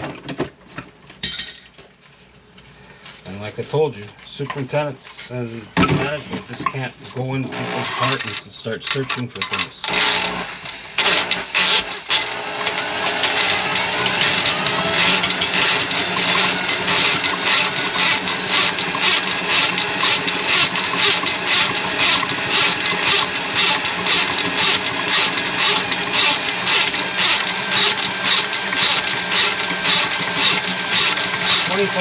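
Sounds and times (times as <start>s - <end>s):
drain auger motor running: 7.5s - 8.2s, 9.9s - 32.0s
spinning cable clattering: 11.0s - 32.0s.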